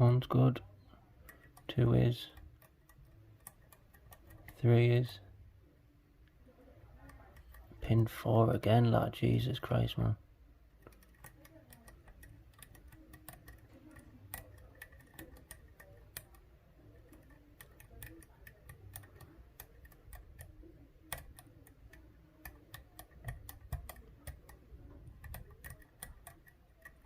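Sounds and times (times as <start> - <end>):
lock pick clicks and ticks: 17.0 - 27.0.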